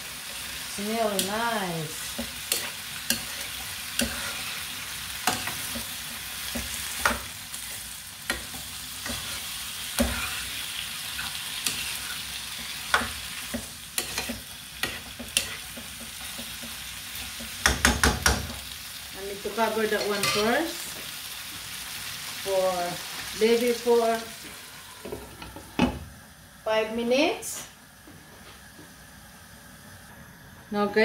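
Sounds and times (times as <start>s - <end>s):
food sizzling in a pan: 0.0s - 31.0s
utensil scraping a pan: 2.2s - 5.9s, 6.6s - 13.2s, 14.0s - 16.5s.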